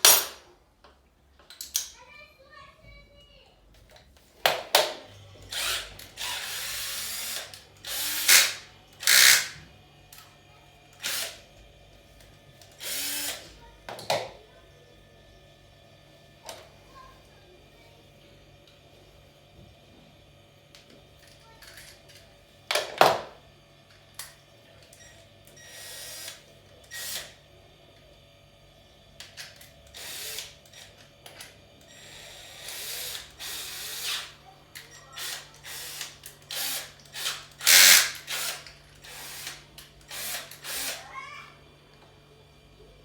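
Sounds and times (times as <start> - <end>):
power drill whirring: 5.4 - 9.6, 11.0 - 11.6, 12.6 - 13.6, 24.9 - 27.4, 29.6 - 31.1, 31.8 - 41.1.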